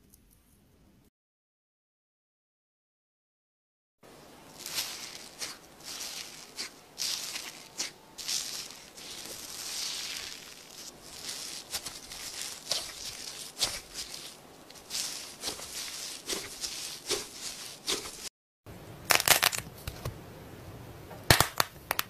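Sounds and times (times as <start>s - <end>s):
slime squishing and crackling: 4.1s - 18.3s
sharp clicks and pops: 21.3s - 22.0s.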